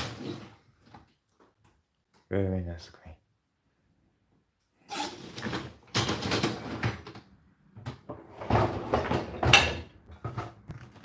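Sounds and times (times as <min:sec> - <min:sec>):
dishwasher rack and dishes clattering: 0:08.0 - 0:10.6.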